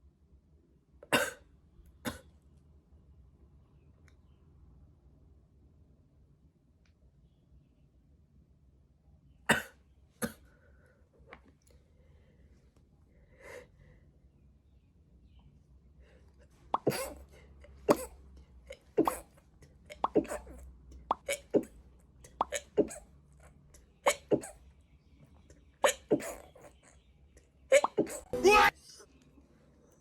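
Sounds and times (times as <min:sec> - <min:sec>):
person sneezing: 0:16.8 - 0:17.3, 0:17.9 - 0:19.3, 0:19.9 - 0:20.6, 0:21.3 - 0:21.8, 0:24.1 - 0:24.6, 0:25.8 - 0:26.6.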